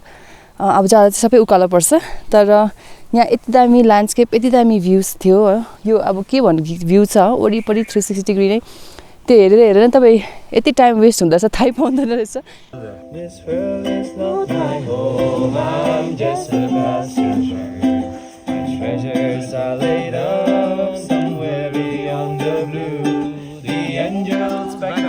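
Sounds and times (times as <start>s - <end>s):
plucked string melody: 12.8s - 25.0s.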